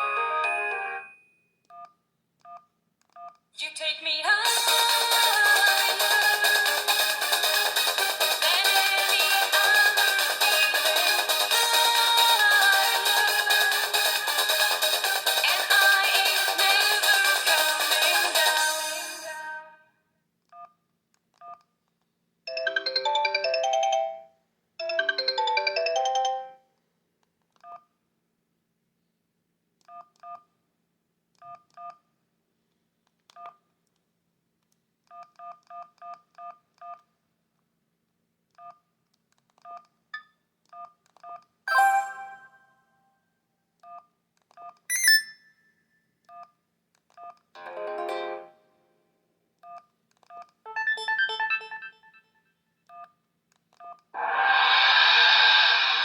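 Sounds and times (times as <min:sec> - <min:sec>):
phone ringtone: 0:22.5 - 0:26.6, 0:41.7 - 0:42.7, 0:44.9 - 0:45.5, 0:50.7 - 0:52.4
alert chimes: 0:41.7 - 0:42.6, 0:44.9 - 0:45.4, 0:50.7 - 0:52.4
paired electronic beeps: 0:44.9 - 0:45.5, 0:50.7 - 0:52.3.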